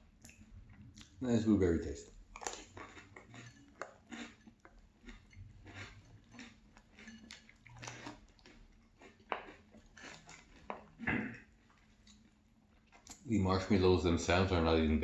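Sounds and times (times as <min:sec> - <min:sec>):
chewing crunchy cereal: 0:00.0 - 0:13.3
wet mouth sounds: 0:09.0 - 0:11.4.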